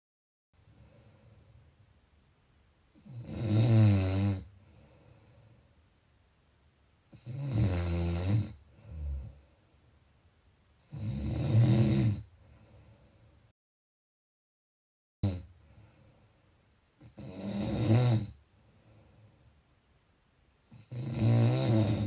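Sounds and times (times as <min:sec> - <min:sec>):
loud low-pitched snoring: 0:20.8 - 0:22.0.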